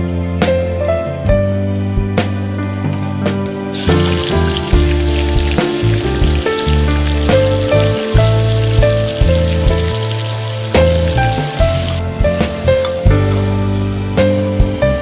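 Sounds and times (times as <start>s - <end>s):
slow melodic background music: 0.0s - 15.0s
oil sizzling in a pan: 3.7s - 14.2s.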